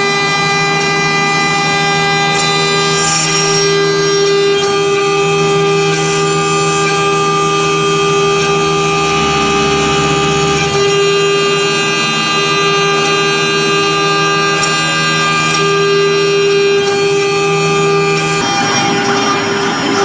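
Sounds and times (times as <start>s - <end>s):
router spindle high whine: 0.0s - 20.0s
low rumble: 1.2s - 12.2s.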